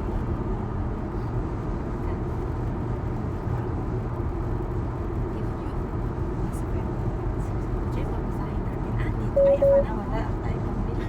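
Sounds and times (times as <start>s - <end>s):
road and tyre rumble: 0.0s - 9.3s.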